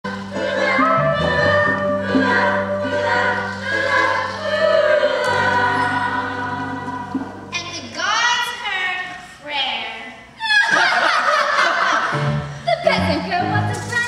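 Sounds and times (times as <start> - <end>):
ensemble singing in chorus: 0.0 - 7.6
instrumental accompaniment: 0.0 - 8.0.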